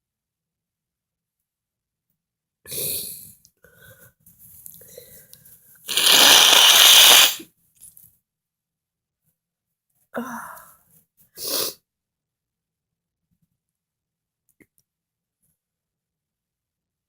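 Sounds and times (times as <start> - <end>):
breathy bursts: 5.9 - 7.4
person sneezing: 5.9 - 7.4.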